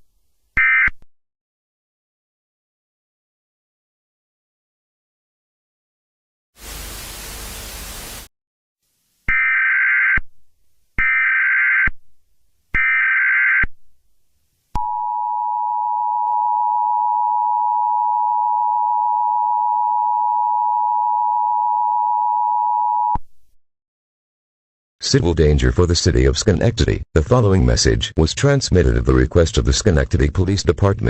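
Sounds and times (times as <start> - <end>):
burst of static: 6.6 - 8.3.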